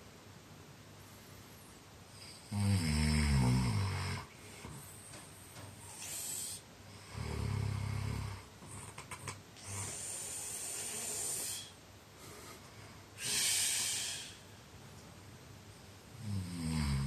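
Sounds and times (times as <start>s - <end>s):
person snoring: 2.2s - 4.3s, 5.9s - 11.8s, 16.2s - 17.0s.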